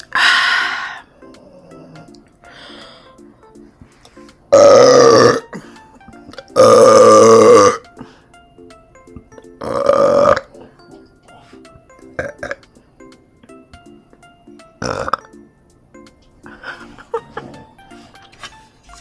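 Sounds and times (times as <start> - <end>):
quiet background music: 0.0 - 19.0
person burping loudly: 4.5 - 5.6, 6.5 - 7.8, 9.6 - 10.6, 12.2 - 12.6, 14.8 - 15.3.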